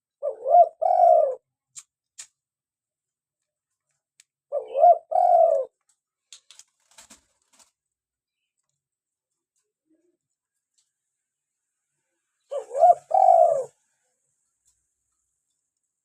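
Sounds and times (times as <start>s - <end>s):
dove cooing: 0.0s - 1.5s, 4.5s - 5.8s, 12.4s - 13.8s.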